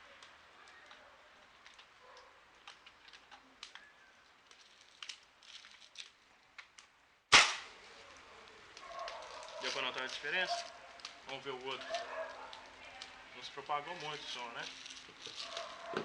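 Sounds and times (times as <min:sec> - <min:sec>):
air rifle shot: 0:07.3 - 0:07.8.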